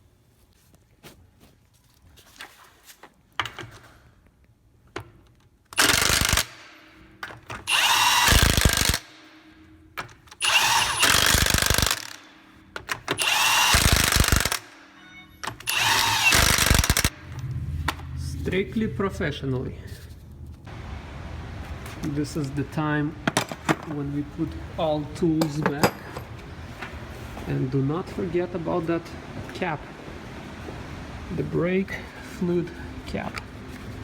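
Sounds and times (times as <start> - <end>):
impact wrench hammering: 5.8 - 17.2.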